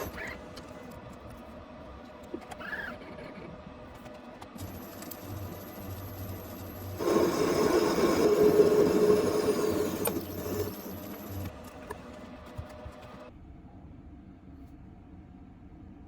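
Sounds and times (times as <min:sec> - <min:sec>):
machine tool motor humming: 0:04.6 - 0:13.3.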